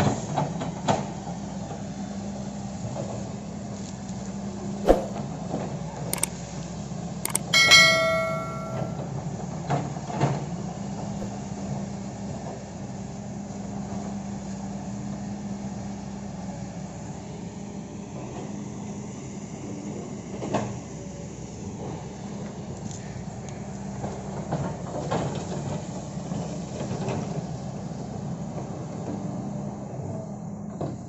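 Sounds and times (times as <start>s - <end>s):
ringing metallic clang: 7.3s - 9.0s.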